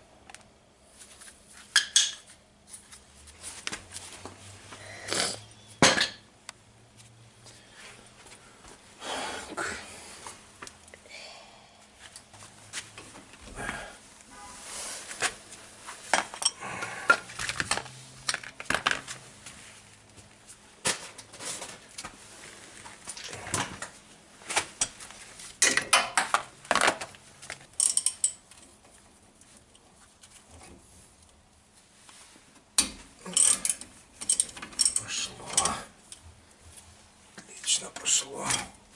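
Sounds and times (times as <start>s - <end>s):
metallic clinks and scrapes: 27.8s - 28.7s, 33.3s - 35.8s.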